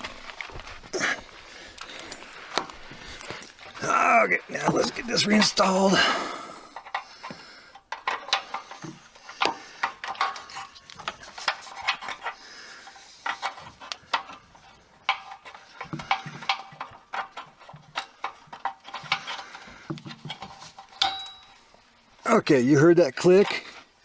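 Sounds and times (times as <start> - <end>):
metal hardware clinking and rattling: 6.8 - 12.4, 15.0 - 21.8.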